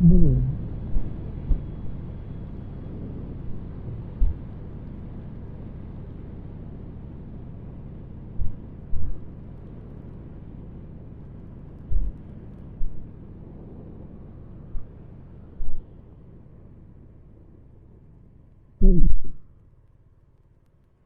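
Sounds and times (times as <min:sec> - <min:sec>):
wind buffeting thumps: 0:00.0 - 0:02.3, 0:02.9 - 0:04.8, 0:08.3 - 0:09.3, 0:11.8 - 0:13.2, 0:15.6 - 0:15.9
wind rush on microphone: 0:11.9 - 0:13.7.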